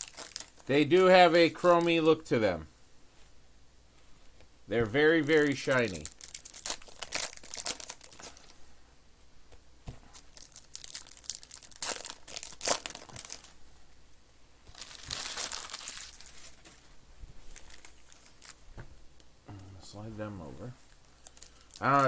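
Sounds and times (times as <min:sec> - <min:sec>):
foil wrappers crinkling and tearing: 0:00.0 - 0:02.2, 0:05.1 - 0:08.5, 0:10.1 - 0:13.6, 0:14.6 - 0:18.6, 0:20.9 - 0:22.0.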